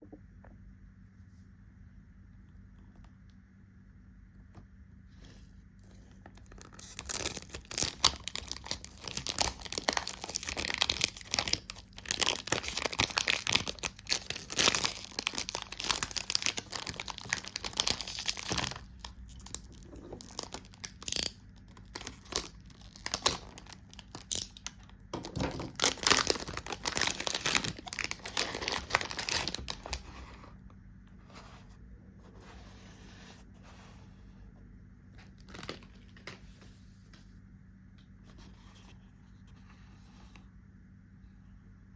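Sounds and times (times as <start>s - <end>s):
packaging wrap tearing and crinkling: 6.4s - 24.8s, 25.6s - 30.0s.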